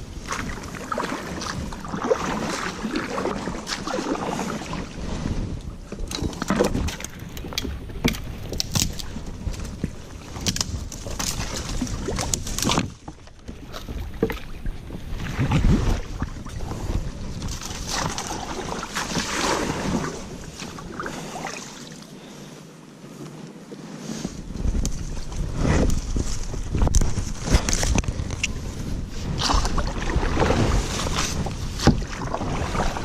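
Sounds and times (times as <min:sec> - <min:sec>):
paddle splashing water: 0:00.0 - 0:33.0
paddle knocking on hull: 0:29.4 - 0:33.0.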